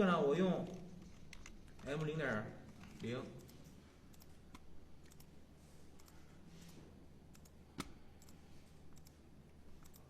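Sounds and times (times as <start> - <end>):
computer clicks: 3.0 - 5.4, 6.0 - 6.2, 7.3 - 9.2, 9.8 - 10.0.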